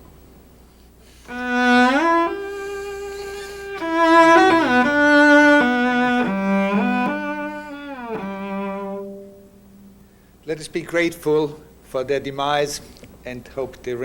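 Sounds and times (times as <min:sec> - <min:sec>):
cello slow melody with slides: 0:01.2 - 0:09.8.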